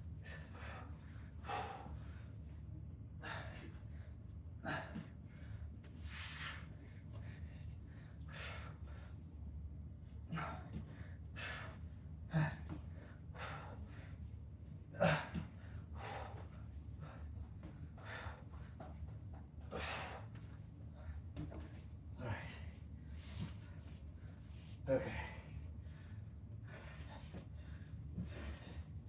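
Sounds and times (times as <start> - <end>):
man breathing hard: 0.2 - 2.5, 3.2 - 9.3, 10.3 - 19.0, 19.6 - 21.3, 22.2 - 29.0.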